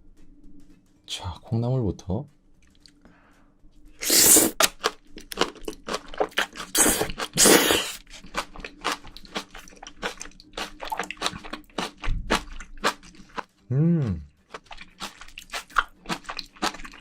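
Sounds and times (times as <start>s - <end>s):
crunching and chewing food: 4.0s - 13.5s, 14.4s - 17.0s.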